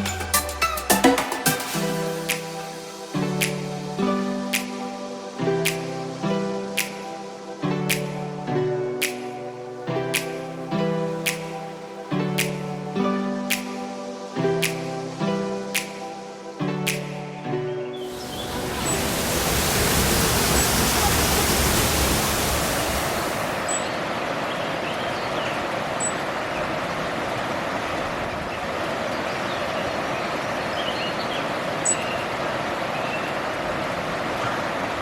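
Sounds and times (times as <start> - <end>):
river water rushing: 18.0 - 24.9.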